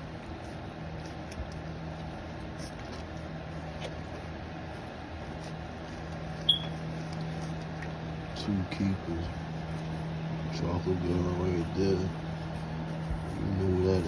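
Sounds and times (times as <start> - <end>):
puppies shuffling: 0.0 - 14.0
steady low hum: 0.0 - 14.0
puppies squeaking faintly: 6.4 - 6.9.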